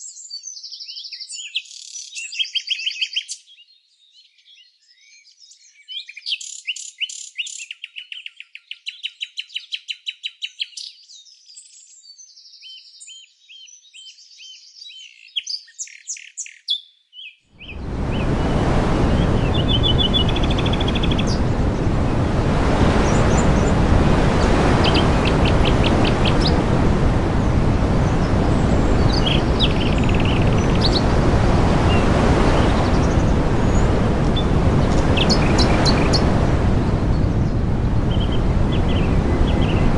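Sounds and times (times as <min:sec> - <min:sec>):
songbirds singing: 0:00.0 - 0:39.9
loud steady rushing noise: 0:17.7 - 0:39.9.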